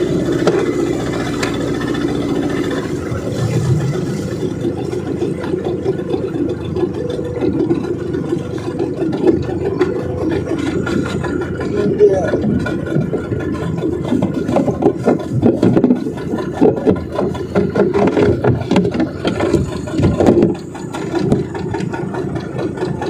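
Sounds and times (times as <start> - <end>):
boat engine running: 0.0 - 23.0.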